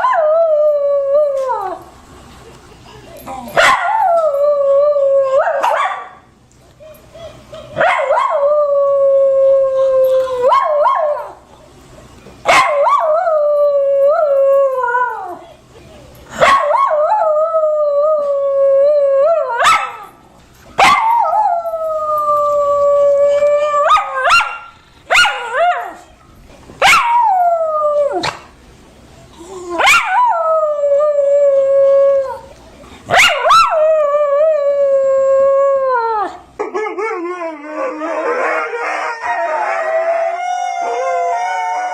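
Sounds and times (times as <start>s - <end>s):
dog howling: 20.8s - 26.0s, 33.2s - 41.9s.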